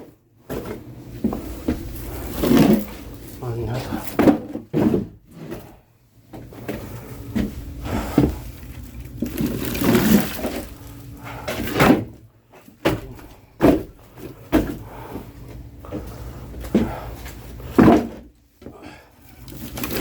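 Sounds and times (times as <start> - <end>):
scraping and rustling: 6.4 - 11.8, 19.3 - 20.0.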